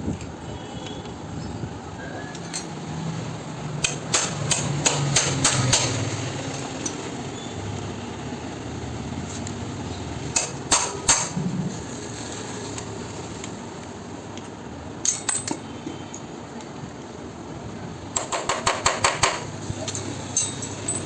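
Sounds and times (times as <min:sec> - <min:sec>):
low background noise: 0:00.0 - 0:21.0
metal tools knocking and clinking: 0:02.4 - 0:02.8, 0:03.8 - 0:07.1, 0:15.0 - 0:16.3, 0:18.2 - 0:21.0.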